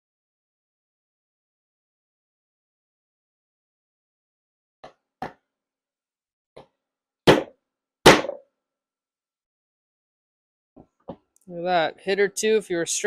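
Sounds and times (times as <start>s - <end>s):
mallet striking metal tool: 8.1s - 8.4s.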